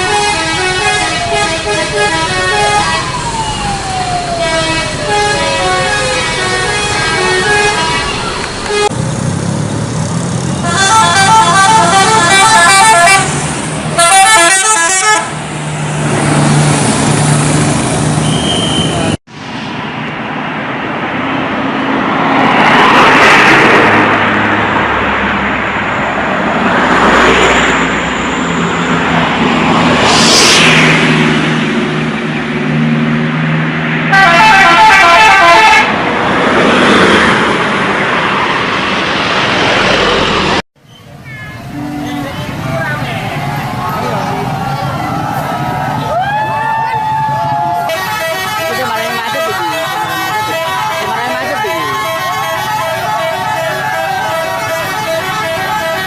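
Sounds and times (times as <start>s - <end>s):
musical bus horn tune: 0.0s - 3.2s, 4.4s - 9.0s, 10.6s - 15.4s, 34.1s - 36.0s, 47.8s - 56.0s
bus engine humming: 0.0s - 56.0s
steady rush of noise: 27.4s - 34.0s, 41.6s - 55.3s.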